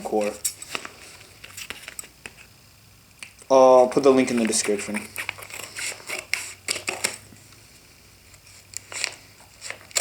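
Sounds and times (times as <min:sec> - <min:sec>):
package rustling and clicking: 0:06.2 - 0:07.2.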